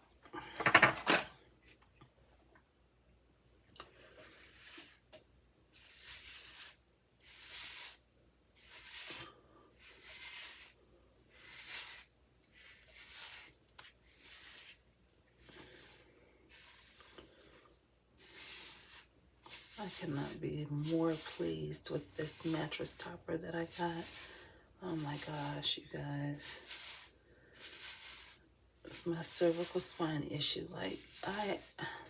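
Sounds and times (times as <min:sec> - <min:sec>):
hair styling hissing strokes: 0:08.6 - 0:09.2, 0:09.8 - 0:14.8, 0:18.2 - 0:32.0.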